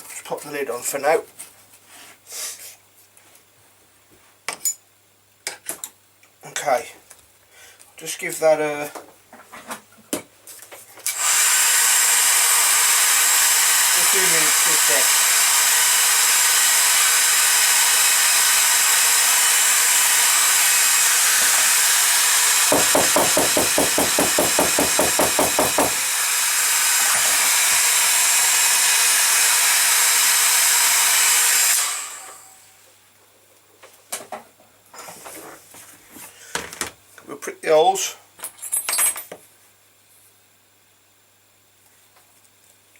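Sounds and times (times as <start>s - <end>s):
hairdryer blowing with whine: 11.1s - 32.8s.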